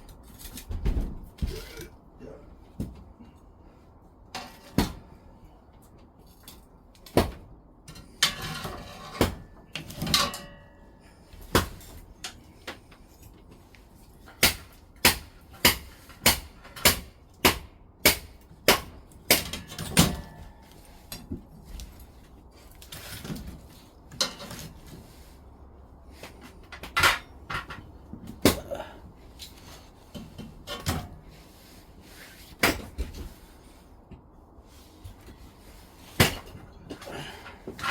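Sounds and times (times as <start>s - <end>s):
axe chopping wood: 4.6s - 5.1s, 7.0s - 7.5s, 9.2s - 9.5s, 11.5s - 12.0s, 14.4s - 20.5s, 28.3s - 28.8s, 32.6s - 33.1s, 36.2s - 36.6s.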